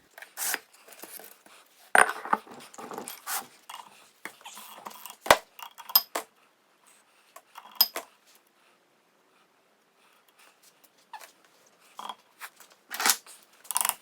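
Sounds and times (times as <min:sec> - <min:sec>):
metal parts clinking and clanking: 0:07.6 - 0:08.0.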